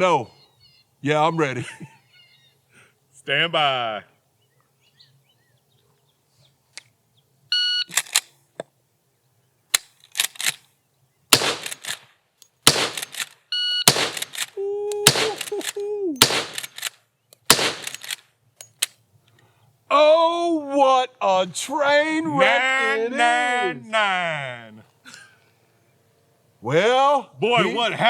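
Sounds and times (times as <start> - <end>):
rifle shots: 11.3 - 18.2.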